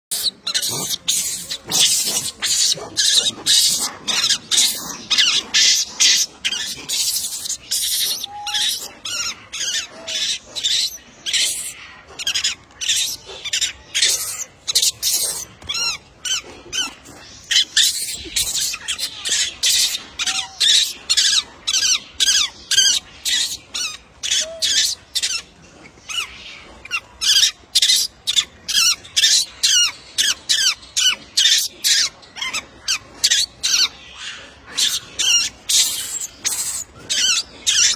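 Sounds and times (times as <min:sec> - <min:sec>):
high-pitched squeaky chirps: 0:00.1 - 0:21.4.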